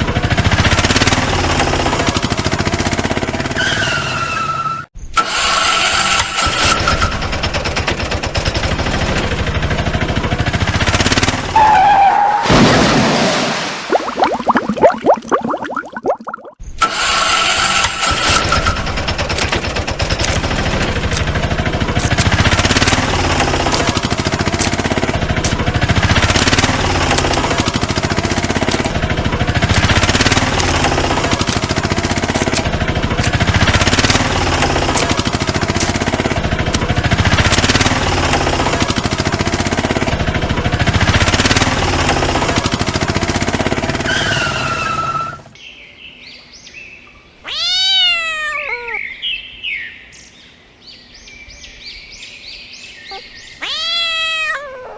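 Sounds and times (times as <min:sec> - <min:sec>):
fast mechanical rattle: 0:05.2 - 0:11.5, 0:16.8 - 0:44.1.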